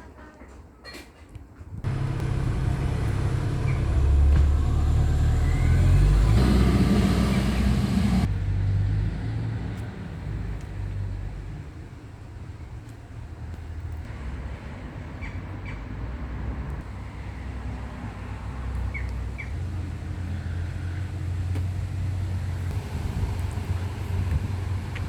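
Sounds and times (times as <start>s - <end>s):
wind buffeting microphone: 1.8s - 8.3s, 22.7s - 25.0s
small bird chirping: 1.9s - 4.5s.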